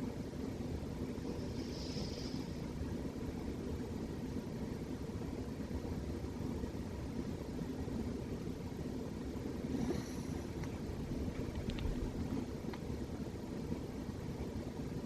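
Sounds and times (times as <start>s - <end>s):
cat snoring: 9.6s - 10.6s.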